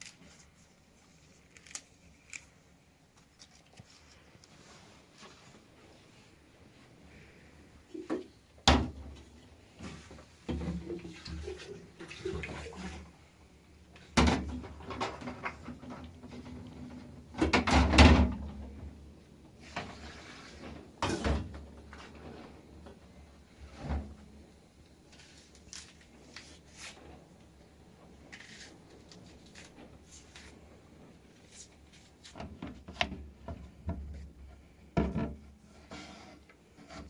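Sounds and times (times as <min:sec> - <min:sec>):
objects knocking and clattering: 0:14.1 - 0:19.0, 0:32.3 - 0:35.6.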